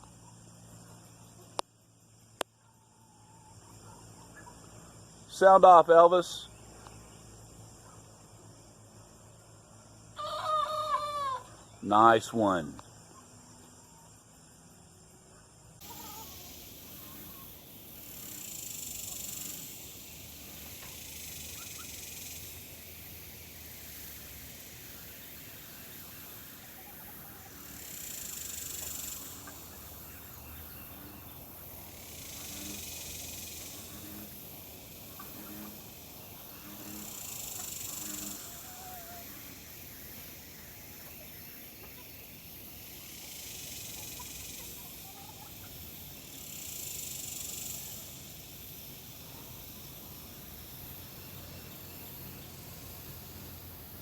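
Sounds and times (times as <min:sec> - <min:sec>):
high-pitched insect buzzing: 0:15.8 - 0:54.0.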